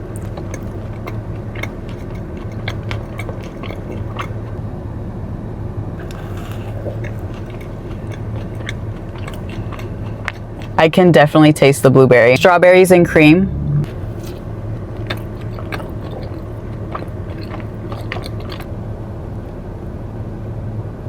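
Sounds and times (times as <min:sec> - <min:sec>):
person chewing: 0:00.0 - 0:04.6, 0:06.0 - 0:10.9, 0:13.7 - 0:18.8
steady low hum: 0:00.0 - 0:21.0.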